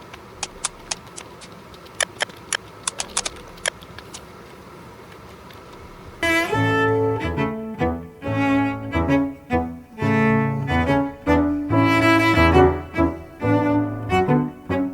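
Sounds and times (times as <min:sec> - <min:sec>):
faint hiss: 0:00.0 - 0:14.9
background music with sustained notes: 0:06.2 - 0:14.9.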